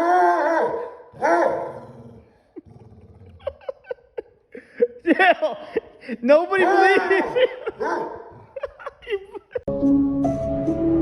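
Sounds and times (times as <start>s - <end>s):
dog yelping: 6.6s - 8.2s.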